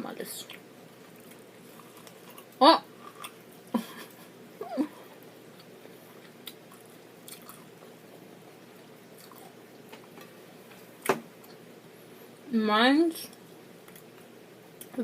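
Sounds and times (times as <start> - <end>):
faint chewing: 0.4 - 4.4, 5.0 - 11.6, 13.3 - 15.0.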